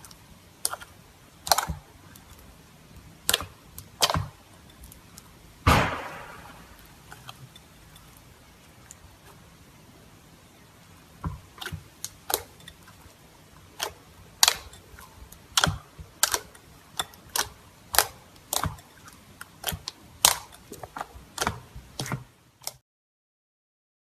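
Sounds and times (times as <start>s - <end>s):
slime clicking and popping: 3.2s - 5.0s, 13.8s - 14.8s, 15.4s - 22.8s.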